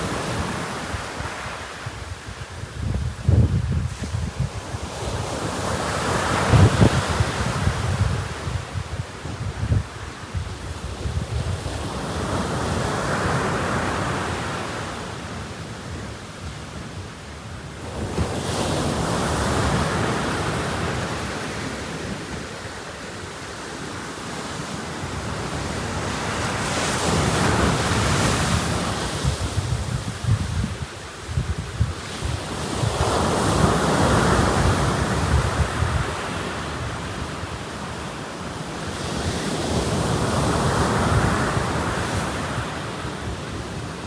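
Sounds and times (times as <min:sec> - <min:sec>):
wind buffeting microphone: 0:00.0 - 0:13.2, 0:25.1 - 0:37.7
waves breaking on beach: 0:00.0 - 0:44.0.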